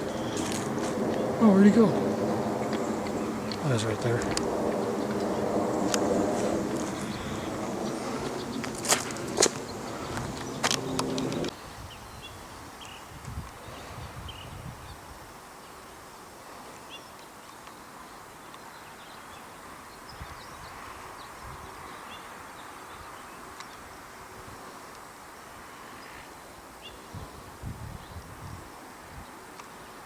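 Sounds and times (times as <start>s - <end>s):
wind rumble on microphone: 0.0s - 15.5s, 20.0s - 24.8s, 26.8s - 29.4s
steady outdoor hiss: 0.0s - 30.0s.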